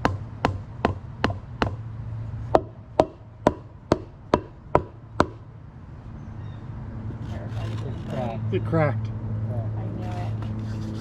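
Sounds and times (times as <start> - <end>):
sharp knocks pounding paver slab: 0.0 - 1.8.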